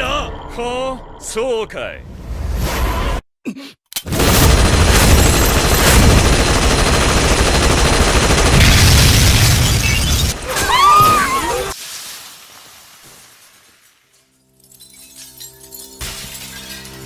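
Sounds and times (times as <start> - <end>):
gunfire and blasts: 4.1 - 10.5.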